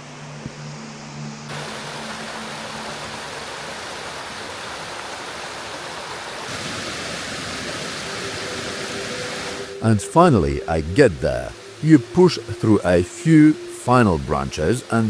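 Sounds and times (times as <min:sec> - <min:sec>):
waterfall rushing: 0:01.5 - 0:15.0.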